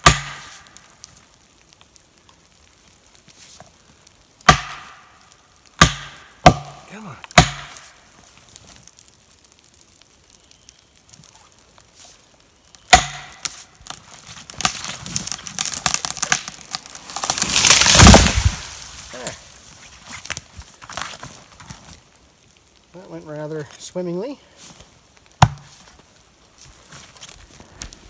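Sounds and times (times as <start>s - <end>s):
tree cracking and snapping: 0.0s - 28.0s
tree crashing to ground: 12.7s - 22.3s
blow on felling wedge: 12.9s - 21.2s.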